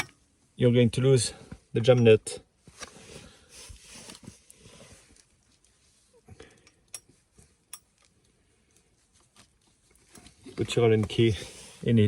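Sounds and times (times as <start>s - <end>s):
hand tools clicking and clinking: 0.0s - 0.2s, 6.5s - 8.1s.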